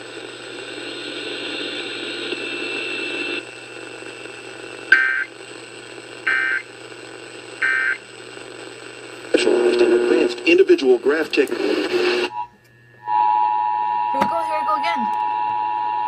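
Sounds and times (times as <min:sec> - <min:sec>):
radio static: 0:00.0 - 0:12.5.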